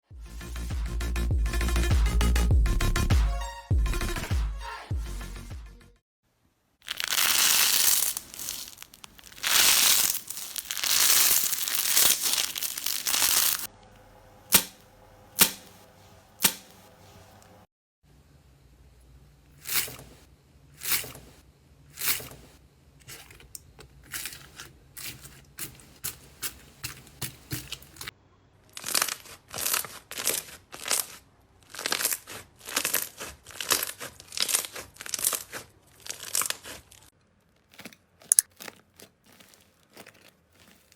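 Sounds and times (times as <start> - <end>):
slime crackling: 6.8 - 13.7, 28.7 - 40.9
slime crinkling and rustling: 6.8 - 13.7, 23.0 - 28.1, 28.7 - 40.9
slime popping: 6.8 - 13.7.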